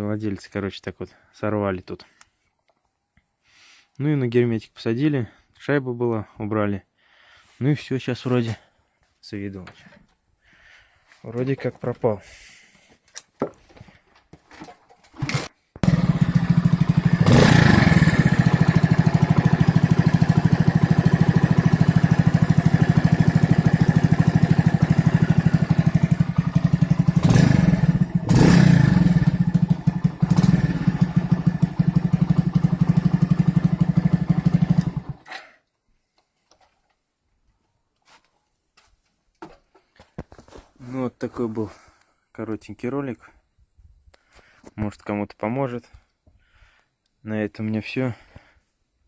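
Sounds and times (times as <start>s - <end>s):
moped engine idling and revving: 15.8s - 35.3s.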